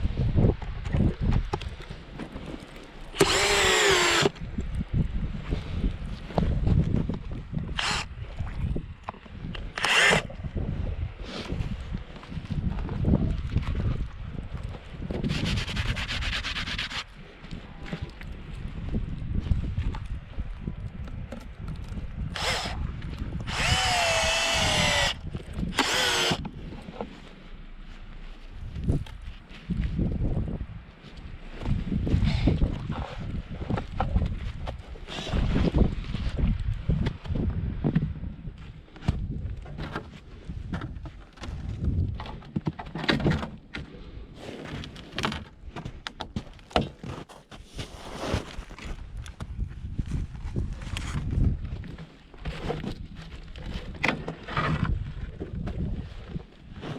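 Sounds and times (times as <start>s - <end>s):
electric drill whining into wood: 3.2s - 4.3s, 7.8s - 8.1s, 9.8s - 10.3s, 22.4s - 22.8s, 23.4s - 26.4s.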